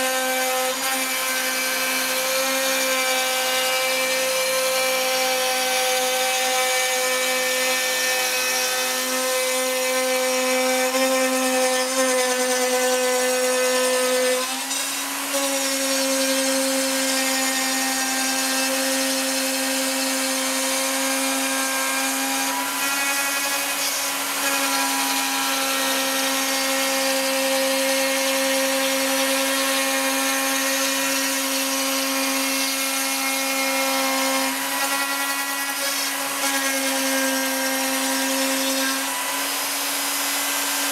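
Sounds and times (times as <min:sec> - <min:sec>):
router spindle whining: 0:00.0 - 0:40.9.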